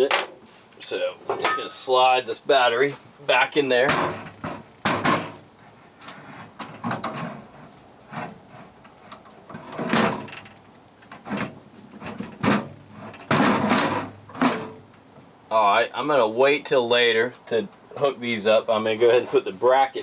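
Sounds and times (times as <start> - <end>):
battery sliding scrapes and knocks: 4.0 - 10.4, 11.1 - 14.8.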